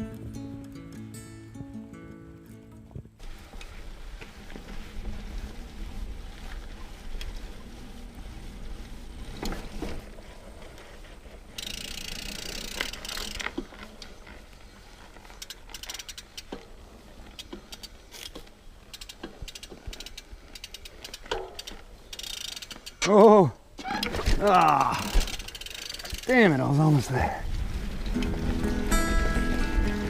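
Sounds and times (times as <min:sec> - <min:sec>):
bike tyre rumble on trail: 0:00.0 - 0:30.0
bike knocks and rattles: 0:08.6 - 0:10.7, 0:11.5 - 0:14.4, 0:17.4 - 0:22.9
freehub ratchet clicking: 0:11.6 - 0:13.6, 0:15.3 - 0:16.6, 0:17.4 - 0:23.0, 0:25.0 - 0:26.3.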